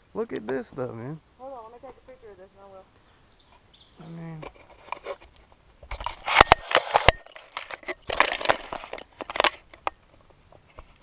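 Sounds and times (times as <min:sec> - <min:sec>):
close crunching and crackling: 0:04.3 - 0:11.0.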